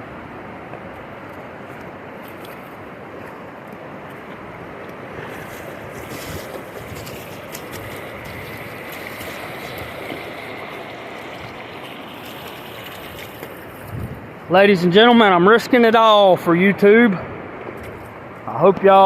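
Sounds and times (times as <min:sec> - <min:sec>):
water rushing over rocks: 0:01.5 - 0:14.8.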